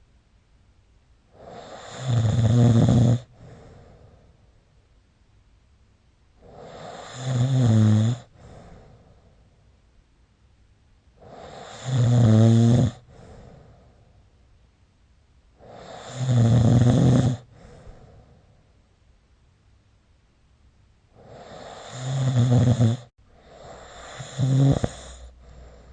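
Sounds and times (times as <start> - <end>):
person snoring: 1.4 - 3.7, 6.4 - 8.8, 11.2 - 13.6, 15.6 - 18.0, 21.2 - 25.9
faint breath: 3.2 - 4.8, 8.2 - 9.8, 13.0 - 14.5, 17.4 - 18.9, 23.2 - 25.9.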